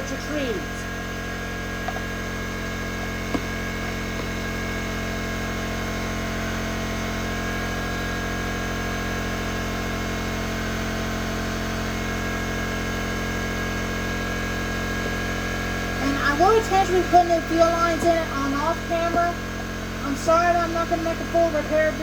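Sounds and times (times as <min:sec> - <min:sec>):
electrical hum: 0:00.0 - 0:22.0.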